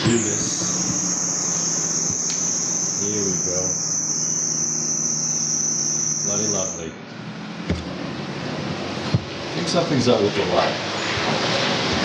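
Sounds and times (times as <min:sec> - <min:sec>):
electric starter motor whining: 0:00.0 - 0:06.9.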